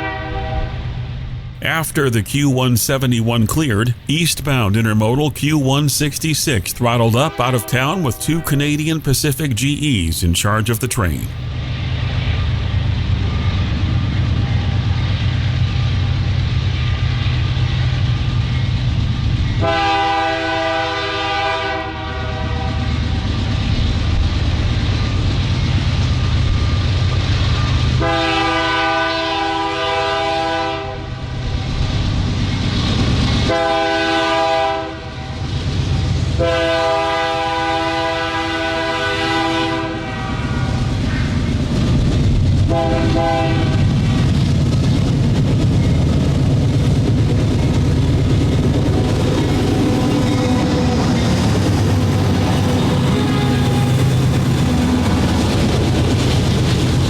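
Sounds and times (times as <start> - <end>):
locomotive air horn blowing: 0.0 - 0.9, 19.6 - 22.9, 28.0 - 31.1, 33.5 - 35.4, 36.4 - 40.8, 42.7 - 44.0, 52.8 - 54.1
diesel locomotive engine rumble: 0.0 - 57.0.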